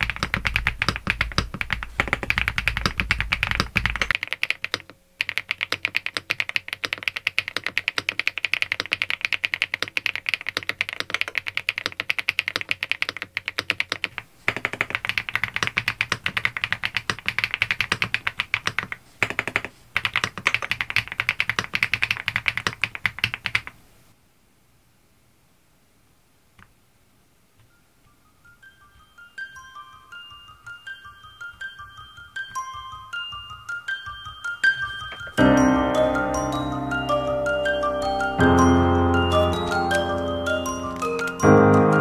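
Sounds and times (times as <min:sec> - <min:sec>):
mechanical keyboard typing: 0:00.0 - 0:23.8.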